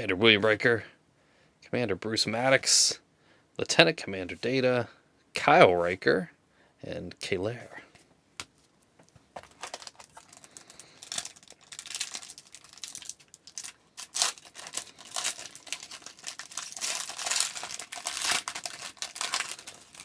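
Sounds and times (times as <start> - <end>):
wrapper tearing and crinkling: 9.4 - 20.0.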